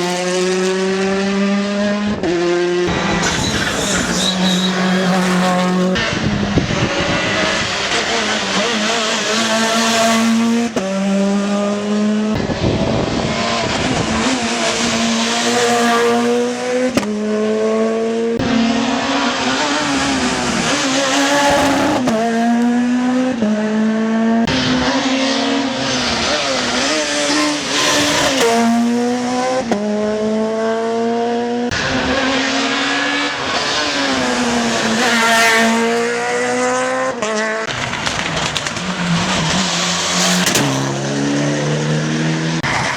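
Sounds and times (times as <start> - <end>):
rally car engines revving: 0.0 - 42.9
tyre squeal: 2.9 - 6.1, 20.6 - 22.7.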